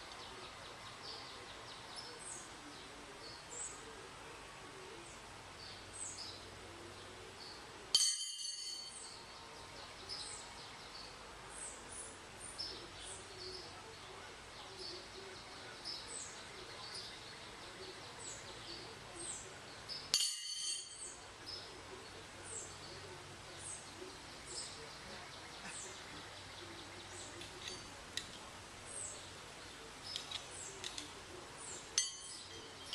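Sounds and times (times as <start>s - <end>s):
low background hiss: 0.0s - 32.9s
songbirds chirping: 0.0s - 32.9s
bright ringing clink: 8.0s - 9.1s, 20.2s - 21.1s, 32.0s - 32.9s.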